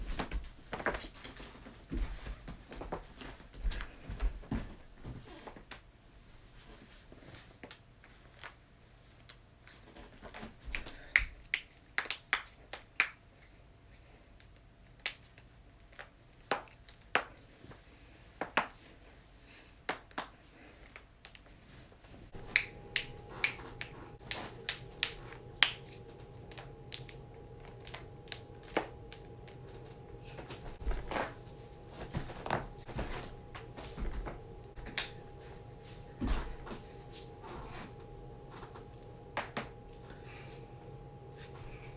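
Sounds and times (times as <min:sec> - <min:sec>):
steady hum: 0:22.0 - 0:41.9.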